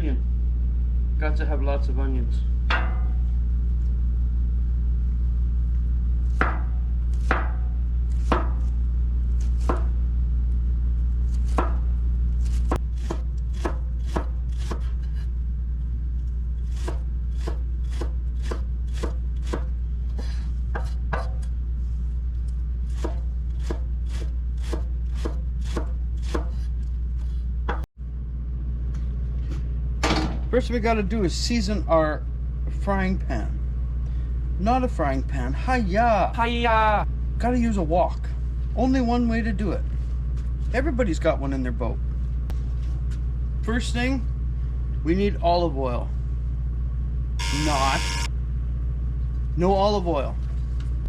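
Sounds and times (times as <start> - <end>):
steady low hum: 0.0 - 51.0
knife chopping on cutting board: 8.2 - 8.7, 9.4 - 9.9, 12.5 - 15.2, 16.7 - 21.4, 22.9 - 26.7.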